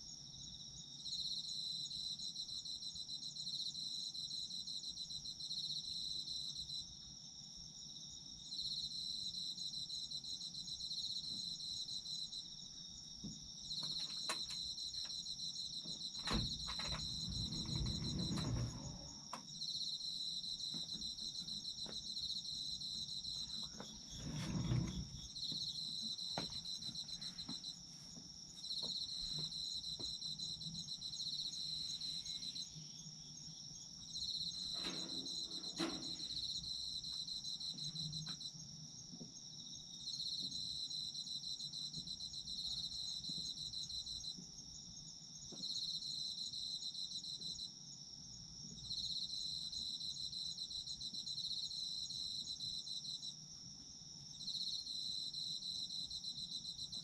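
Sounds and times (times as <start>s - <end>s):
insect chirping in rapid pulses: 0.0s - 57.0s
insect high trill: 29.1s - 38.3s.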